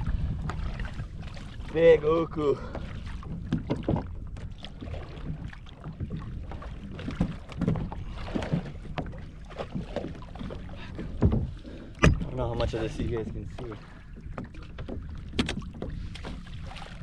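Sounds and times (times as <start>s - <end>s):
knocks and thumps on hull: 0.0s - 17.0s
water splashing and sloshing: 0.0s - 17.0s.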